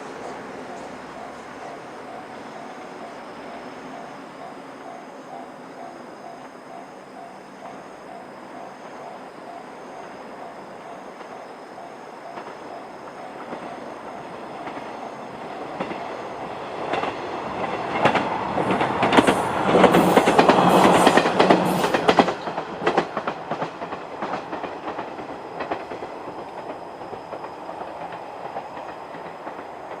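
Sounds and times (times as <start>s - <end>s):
diesel railcar passing: 0.0s - 30.0s
wheels clacking over rail joints: 12.3s - 30.0s.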